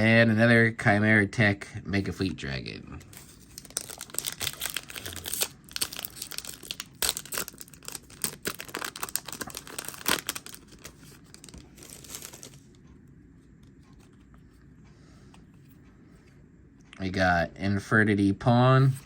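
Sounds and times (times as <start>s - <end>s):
foil wrapper crinkling and tearing: 3.1s - 12.6s.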